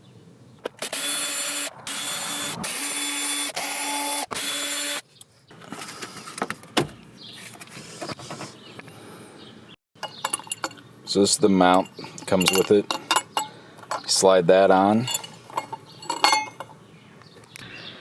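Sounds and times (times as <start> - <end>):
handling and rustling: 10.0 - 16.8.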